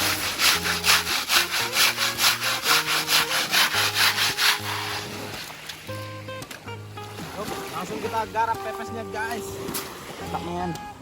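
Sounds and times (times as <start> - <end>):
hand scrubbing: 0.0 - 6.1.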